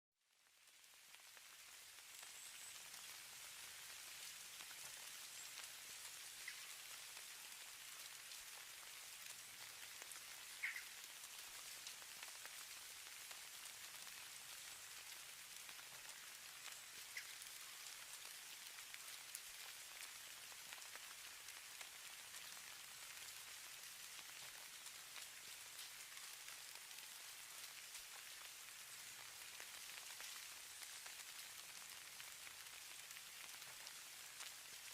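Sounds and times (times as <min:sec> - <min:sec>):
falling snow hiss: 0:01.4 - 0:34.9
ice grains ticking: 0:04.7 - 0:13.6.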